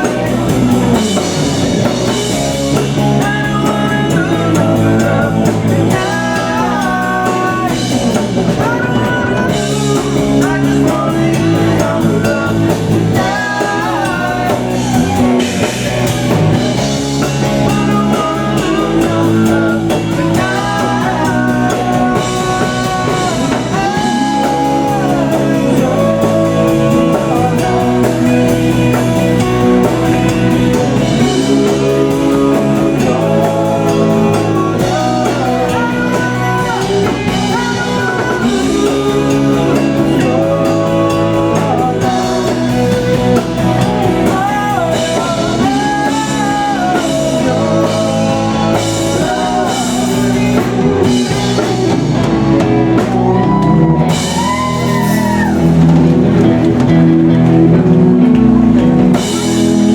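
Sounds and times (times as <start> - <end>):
electric guitar lead melody: 0.0 - 59.9
live rock band playing: 0.0 - 59.9.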